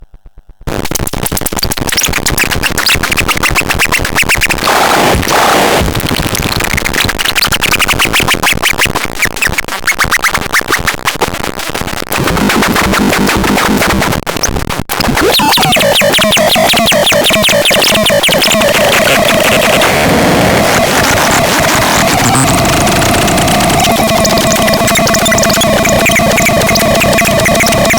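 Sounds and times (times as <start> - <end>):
glitchy electronic buzzing: 0.7 - 8.3, 12.2 - 27.9
wavering electronic tone: 15.1 - 27.9.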